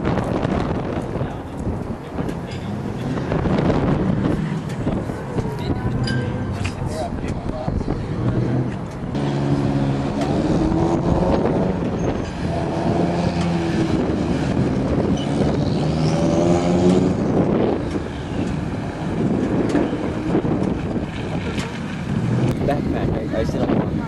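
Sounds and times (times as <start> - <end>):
wind rushing: 0.0 - 21.4
motorcycle engine accelerating: 7.8 - 23.2.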